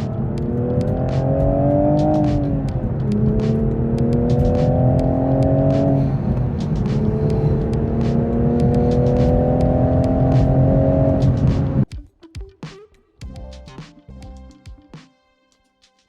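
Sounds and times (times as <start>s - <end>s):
sharp ticks: 0.0s - 11.8s
vehicle engine accelerating: 0.0s - 11.9s.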